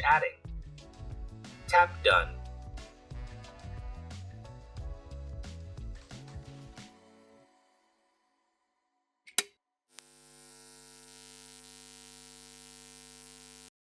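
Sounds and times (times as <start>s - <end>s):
music: 0.0s - 9.2s
steady hum: 10.0s - 13.7s.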